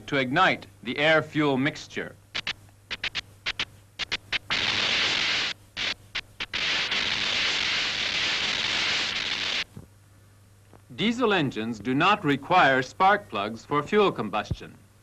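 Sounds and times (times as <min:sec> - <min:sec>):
continuous sparking hiss: 0:00.0 - 0:15.0
spark plug sparks snapping: 0:02.4 - 0:09.7.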